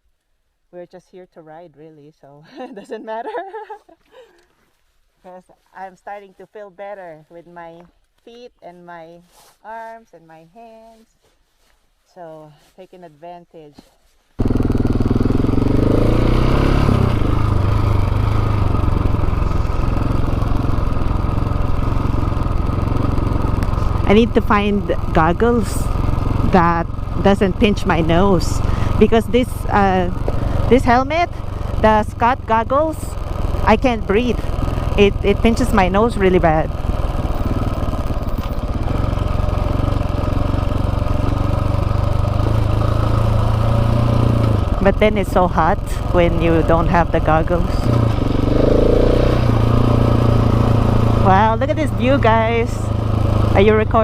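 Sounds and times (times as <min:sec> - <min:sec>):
dirt bike engine running: 0:14.4 - 0:54.0.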